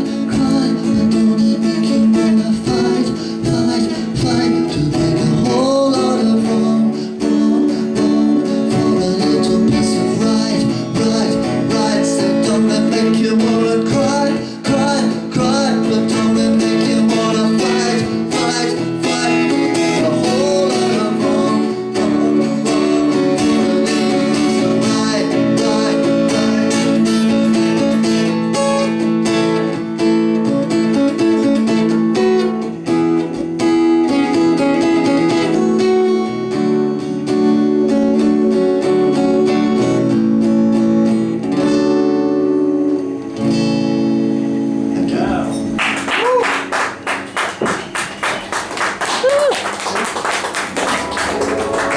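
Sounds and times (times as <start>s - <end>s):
person singing: 0.0s - 28.2s
acoustic guitar strumming: 0.0s - 51.9s.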